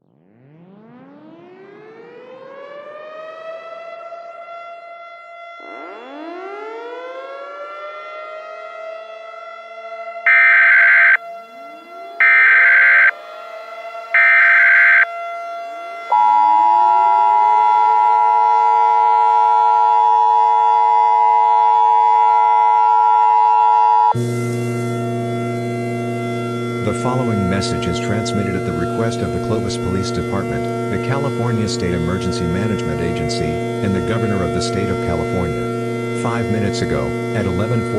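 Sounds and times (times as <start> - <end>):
civil defense sirens: 0.0 - 37.9
data tone bursts: 10.3 - 11.2, 12.2 - 13.1, 14.2 - 15.0
two-tone attention signal: 10.3 - 13.2, 14.2 - 15.1, 16.1 - 19.9
harsh low buzzing tone: 24.1 - 37.9.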